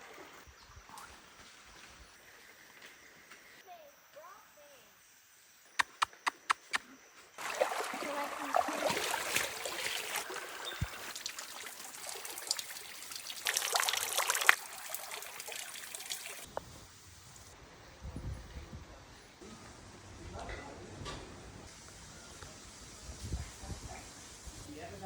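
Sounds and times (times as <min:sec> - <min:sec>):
water running and splashing: 0:07.4 - 0:16.5.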